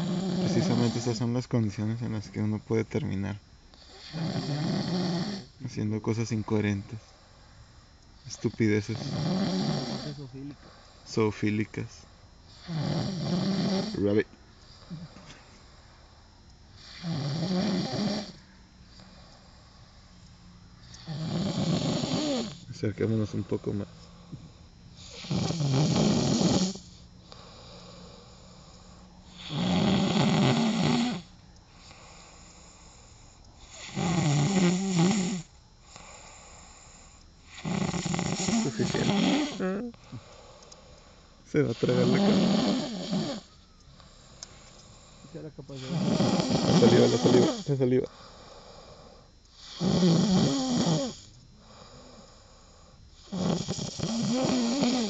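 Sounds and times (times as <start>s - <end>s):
man snoring: 0.0s - 6.8s, 8.2s - 14.2s, 16.7s - 18.4s, 20.9s - 55.0s
quiet breathing: 0.0s - 55.0s
quiet breath: 7.0s - 8.6s, 10.0s - 11.2s, 14.6s - 17.0s, 18.3s - 21.2s, 22.5s - 25.3s, 26.8s - 29.6s, 31.2s - 34.0s, 35.7s - 37.6s, 40.0s - 42.0s, 43.4s - 45.5s, 48.0s - 49.8s, 51.1s - 53.4s.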